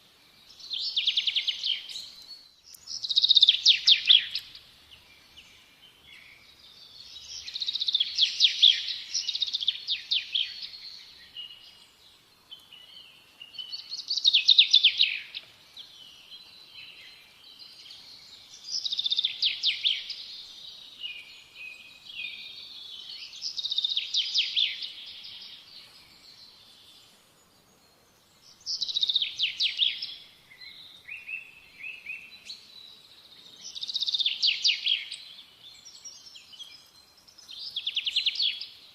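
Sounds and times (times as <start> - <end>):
quiet bird twittering: 0.1 - 38.9
songbird trilling: 0.7 - 4.6.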